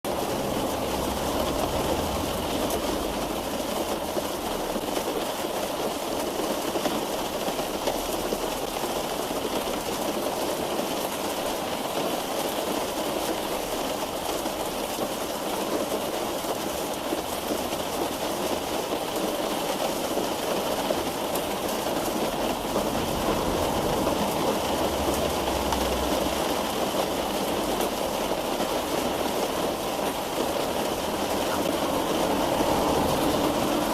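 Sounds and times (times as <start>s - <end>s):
rain drumming on car roof: 0.0s - 33.9s
low rumble: 22.5s - 27.4s.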